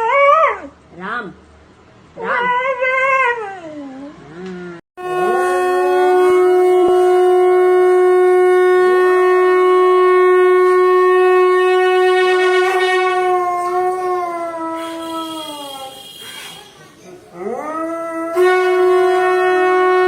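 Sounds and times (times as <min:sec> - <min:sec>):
conch shell blown: 0:05.0 - 0:16.8, 0:18.0 - 0:20.0
dogs howling: 0:12.6 - 0:16.0.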